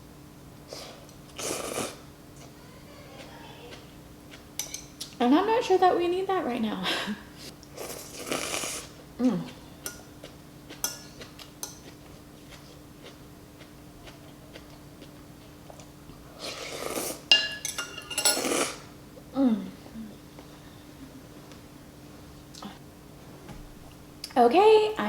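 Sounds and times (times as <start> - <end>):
slurping noodle soup: 0.7 - 2.0, 7.7 - 9.0, 16.4 - 17.3, 18.4 - 18.9
spoon clinking against bowl: 17.3 - 18.5.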